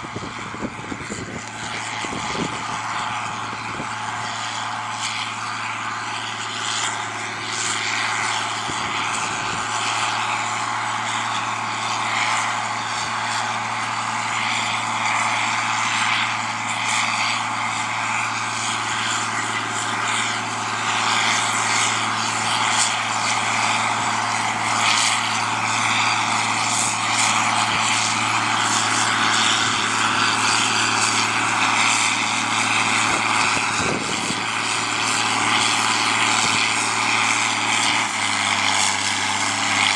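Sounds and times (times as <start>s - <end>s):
tractor diesel engine drone: 0.0s - 39.9s.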